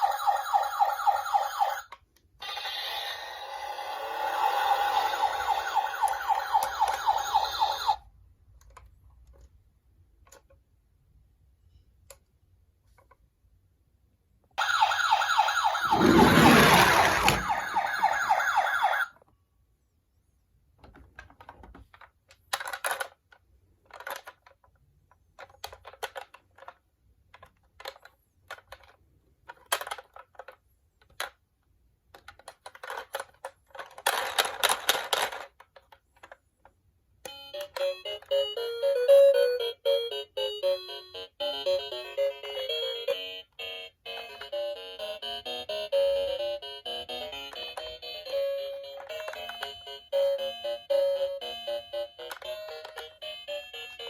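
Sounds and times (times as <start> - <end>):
toy electronic siren: 0.0 - 8.0, 14.6 - 19.2, 37.3 - 54.0
plastic toy cars clicking: 8.5 - 10.7, 20.7 - 38.5, 46.9 - 54.0.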